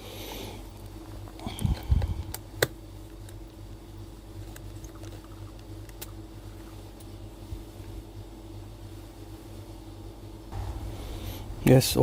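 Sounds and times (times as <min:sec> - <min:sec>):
low electrical hum: 0:00.0 - 0:12.0
soft low bumps: 0:10.5 - 0:12.0.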